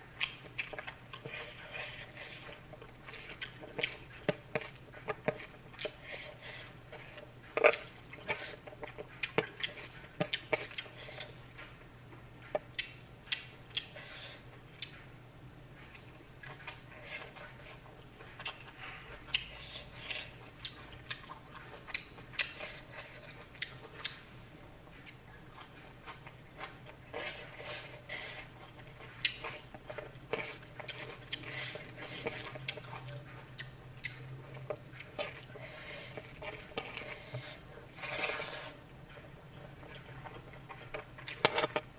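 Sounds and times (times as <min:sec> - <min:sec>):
faint steady hum: 0:00.0 - 0:41.9.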